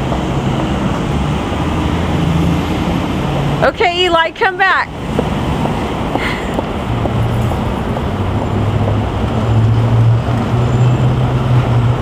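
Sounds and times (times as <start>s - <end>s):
road traffic noise: 0.0s - 12.0s
vehicle engine low hum: 4.9s - 12.0s.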